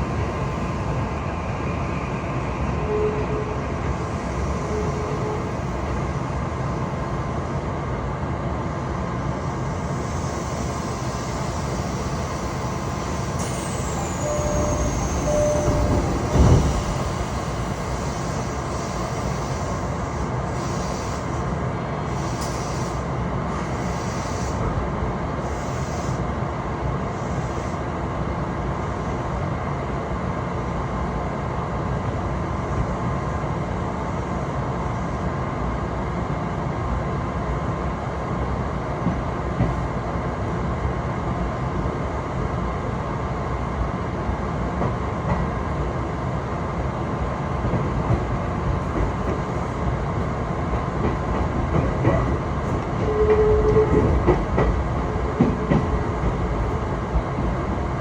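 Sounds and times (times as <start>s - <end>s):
train rumble: 0.0s - 58.0s
short wheel squeal: 10.2s - 19.8s
train wheel clatter: 13.1s - 19.9s, 47.6s - 58.0s.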